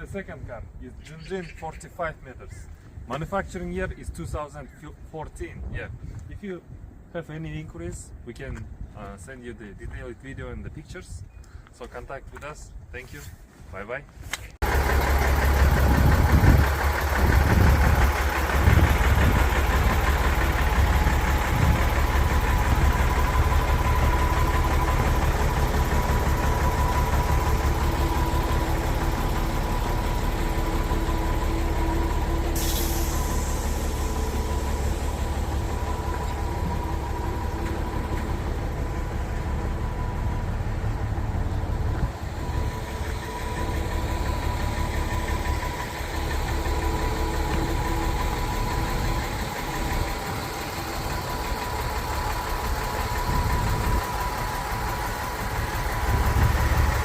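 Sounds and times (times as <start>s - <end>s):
diesel engine running: 14.6s - 57.0s
brief hiss: 32.6s - 34.1s.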